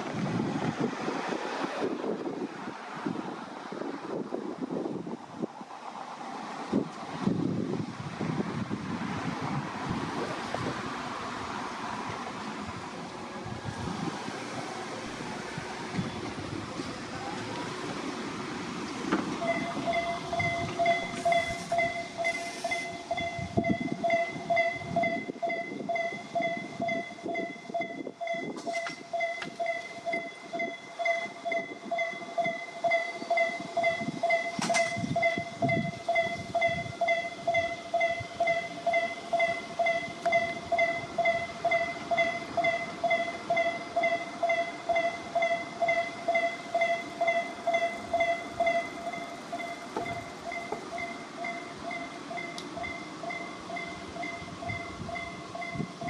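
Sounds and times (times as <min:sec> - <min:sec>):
train rumbling and clattering: 0:00.0 - 0:56.0
level crossing alarm dinging: 0:19.3 - 0:56.0.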